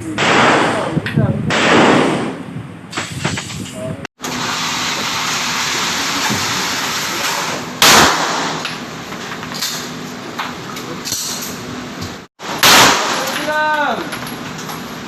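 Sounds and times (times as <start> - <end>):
gunshot with echo: 0.2 - 2.4, 7.8 - 8.7, 12.4 - 13.4.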